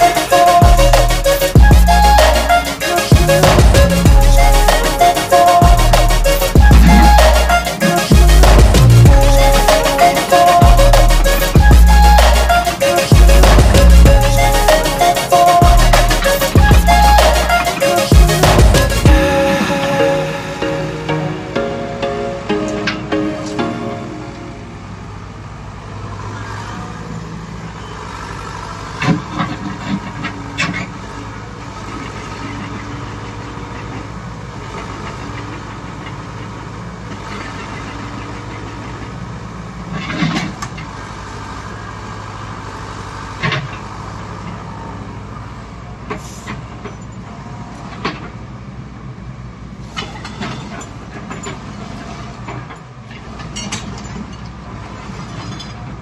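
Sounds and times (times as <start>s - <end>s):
low mechanical drone: 0.0s - 26.0s.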